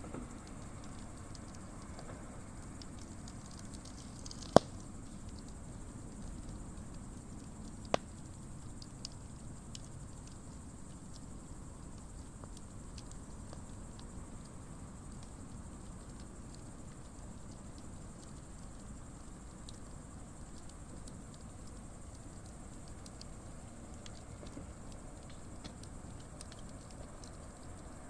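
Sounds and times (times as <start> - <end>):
sharp fire pops: 0.0 - 5.6, 7.2 - 9.9
campfire crackling: 0.0 - 28.0.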